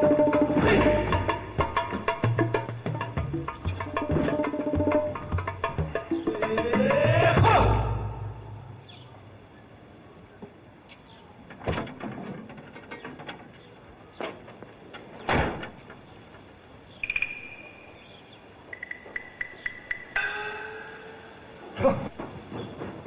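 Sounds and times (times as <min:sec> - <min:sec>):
music hit: 0:18.7 - 0:21.8.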